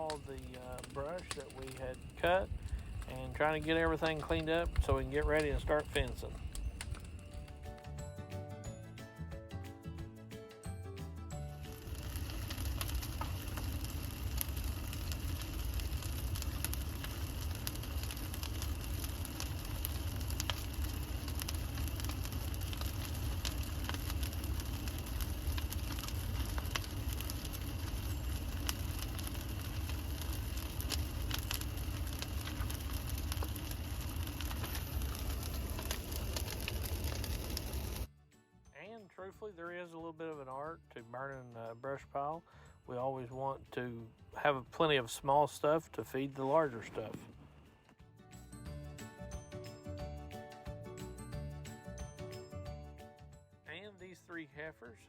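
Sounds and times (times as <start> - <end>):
fire crackling and popping: 0.0 - 8.8, 11.3 - 38.1, 42.9 - 52.8
steady low rumble: 0.1 - 7.5, 11.8 - 38.1.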